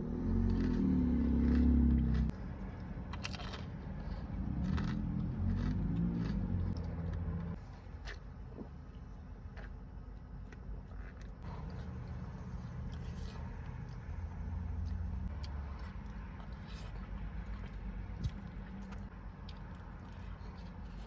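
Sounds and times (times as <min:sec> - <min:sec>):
low rumble: 0:00.0 - 0:07.7
chewing: 0:00.2 - 0:14.1, 0:14.8 - 0:21.0.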